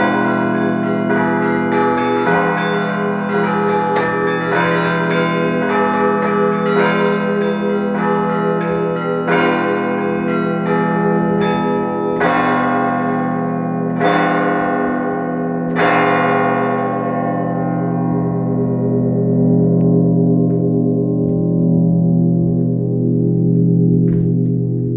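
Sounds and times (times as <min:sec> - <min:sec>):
church bell strokes: 0:00.0 - 0:24.9
deep lingering bell hum: 0:17.6 - 0:24.9.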